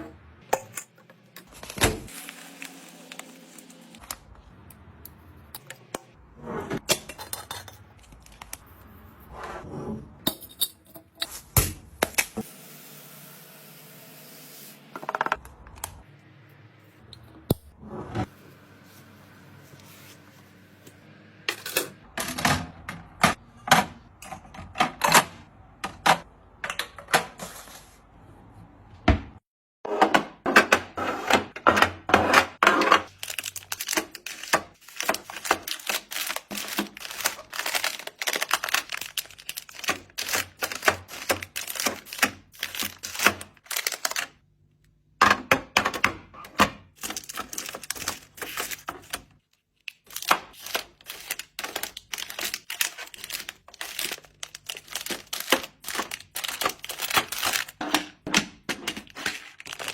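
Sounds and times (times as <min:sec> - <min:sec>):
small items clattering: 0:33.0 - 0:44.4, 0:50.0 - 0:59.9.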